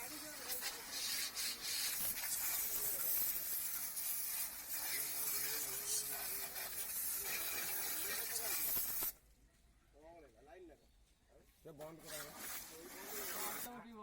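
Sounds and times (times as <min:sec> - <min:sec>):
high-pressure water jet spraying: 0:00.0 - 0:09.2, 0:12.0 - 0:13.8.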